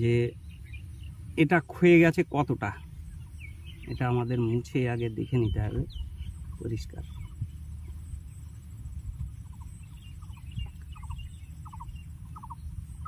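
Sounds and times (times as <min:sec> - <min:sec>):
low background hum: 0:00.0 - 0:13.0
fowl calling in rapid pulses: 0:09.1 - 0:13.0.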